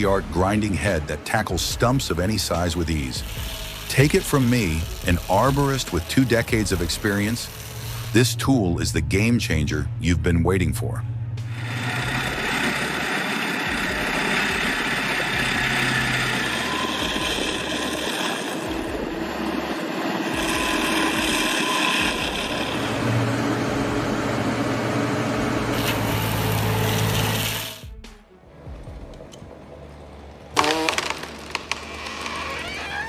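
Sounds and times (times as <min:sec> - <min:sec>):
stump grinder grinding: 0:01.8 - 0:08.5, 0:11.5 - 0:27.9, 0:30.5 - 0:33.0.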